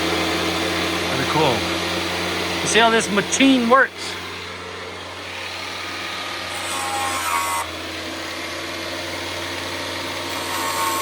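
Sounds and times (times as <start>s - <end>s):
machine motor hum: 0.0s - 11.0s
grinding stone rubbing metal: 5.2s - 7.8s, 10.1s - 11.0s.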